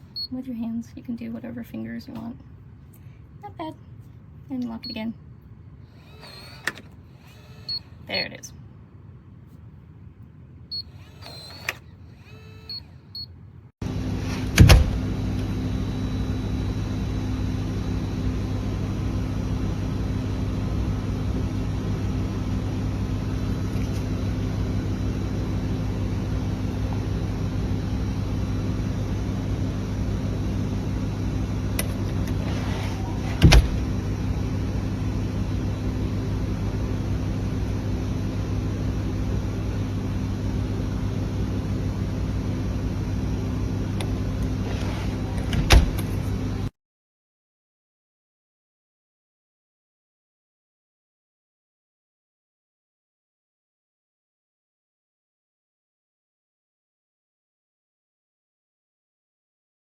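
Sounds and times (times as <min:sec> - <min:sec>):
low mechanical hum: 0:00.0 - 0:46.7.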